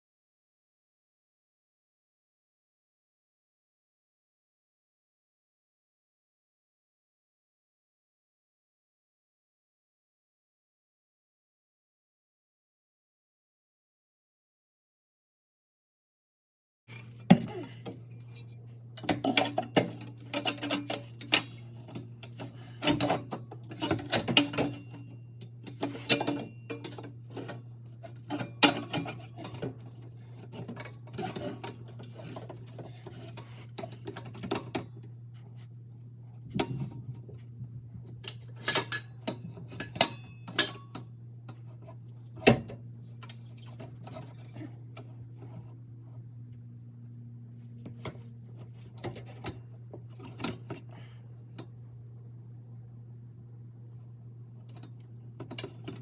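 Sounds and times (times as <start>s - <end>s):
steady low hum: 16.9s - 56.0s
metal tools clinking: 19.1s - 34.8s, 38.2s - 41.0s.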